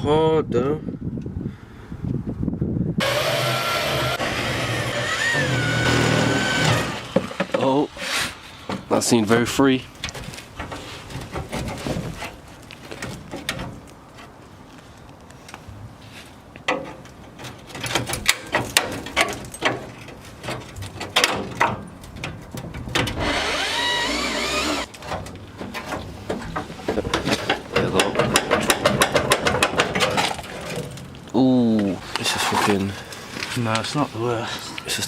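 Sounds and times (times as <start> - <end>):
sheet steel knocking and clanking: 10.0 - 13.8, 16.7 - 23.4, 24.9 - 31.0.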